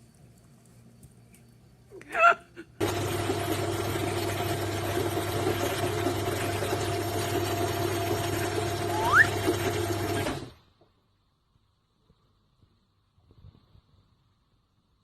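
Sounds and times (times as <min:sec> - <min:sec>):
mechanical whirring hum: 0:00.0 - 0:10.8
high-pitched squeak: 0:08.9 - 0:09.3
short rising whistle: 0:08.9 - 0:09.4.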